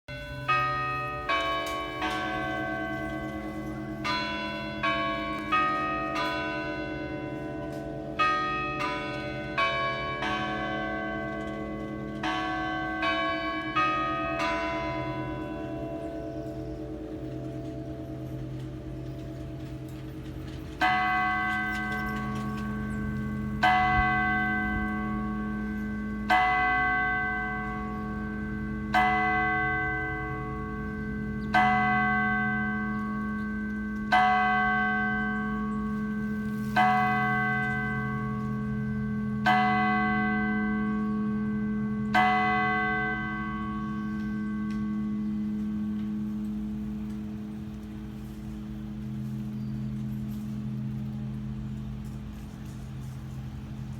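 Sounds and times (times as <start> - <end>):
tower bell striking: 0.1 - 53.0
higher bell notes ringing: 0.1 - 53.9
low hum: 15.0 - 26.3.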